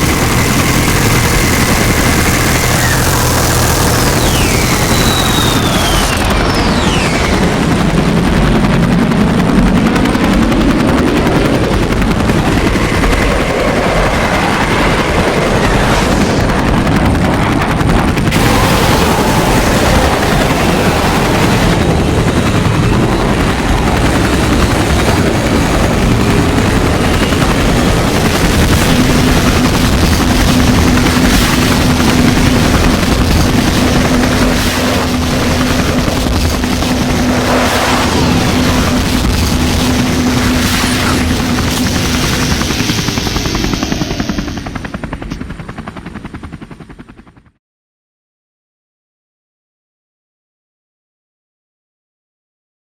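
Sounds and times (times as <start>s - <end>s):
rapid gunfire: 0.0s - 43.8s
aircraft engines: 0.0s - 47.6s
falling whistle: 2.4s - 7.6s.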